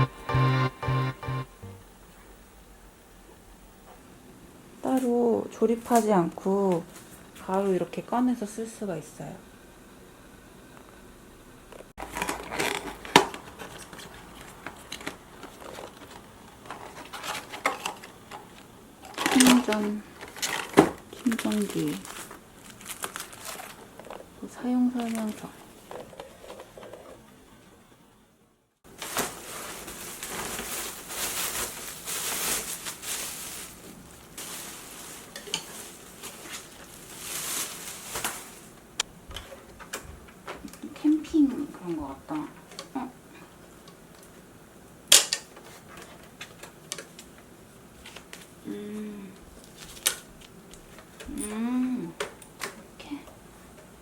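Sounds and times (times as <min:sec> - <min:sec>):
packaging rustling: 0:12.0 - 0:27.1, 0:28.9 - 0:38.9, 0:49.5 - 0:51.1.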